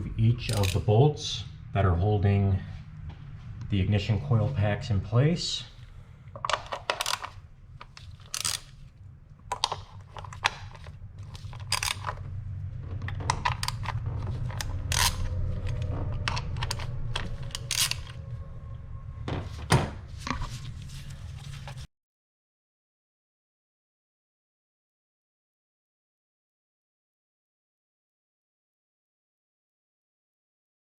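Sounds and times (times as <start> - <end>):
low steady hum: 0.0 - 21.9
socket clinking on bolts: 6.4 - 8.7, 9.5 - 12.2, 13.2 - 15.3, 16.2 - 18.2.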